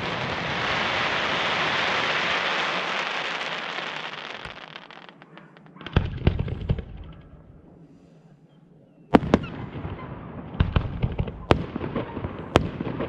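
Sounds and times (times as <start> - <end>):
fireworks crackling hiss: 0.0 - 5.7
firework bangs and pops: 0.0 - 7.2, 9.1 - 13.0.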